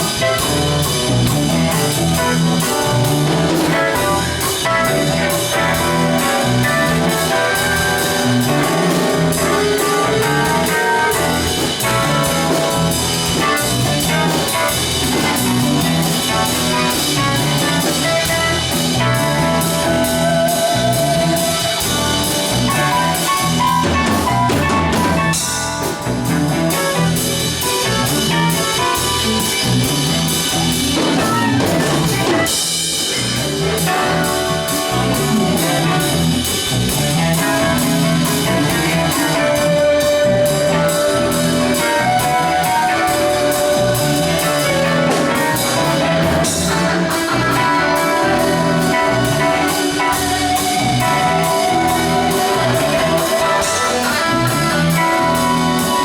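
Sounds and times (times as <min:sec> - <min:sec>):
bass guitar: 0:00.0 - 0:56.0
drum kit groove: 0:00.0 - 0:56.0
electric guitar: 0:00.0 - 0:56.0
keyboard playing: 0:00.0 - 0:56.0.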